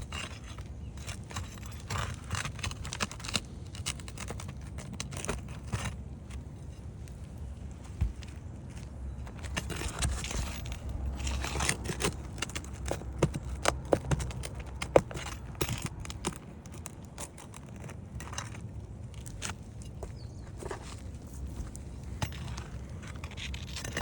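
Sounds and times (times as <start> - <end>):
tool clicking and scraping shingles: 0.0 - 8.2, 8.8 - 24.0
metal tool clicking and scraping: 9.4 - 18.7, 22.2 - 24.0.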